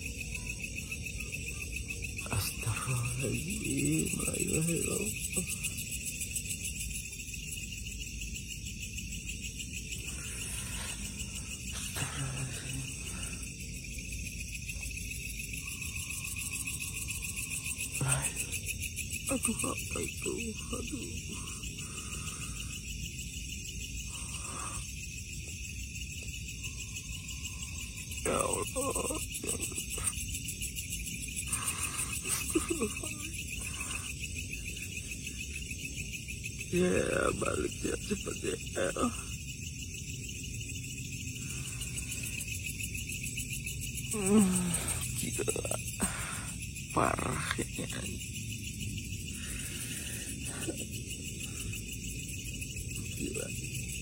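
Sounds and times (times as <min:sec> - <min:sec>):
crickets trilling: 0:00.0 - 0:54.0
faint voices: 0:10.0 - 0:13.5, 0:17.9 - 0:18.6, 0:28.2 - 0:30.1.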